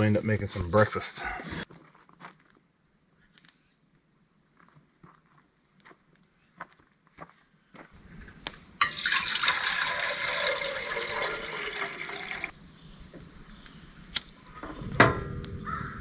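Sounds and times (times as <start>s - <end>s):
water pouring into container: 8.8s - 12.6s.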